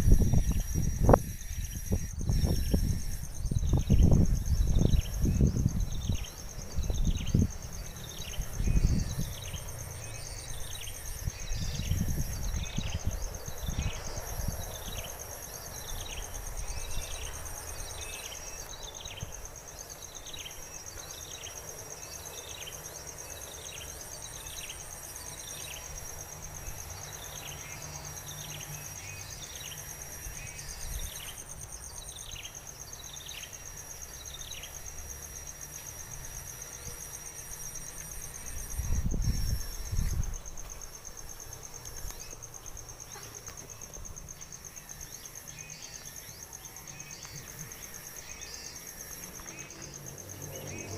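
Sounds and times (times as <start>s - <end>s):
high-pitched insect drone: 0.0s - 50.9s.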